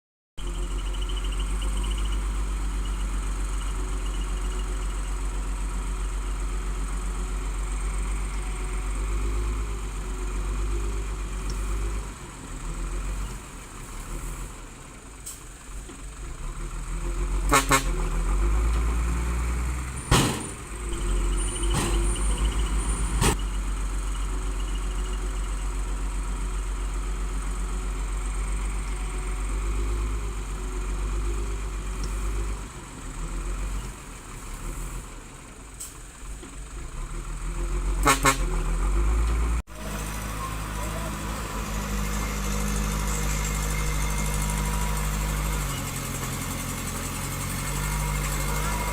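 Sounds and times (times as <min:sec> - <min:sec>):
heavy machinery engine rumbling: 0:00.4 - 0:48.9.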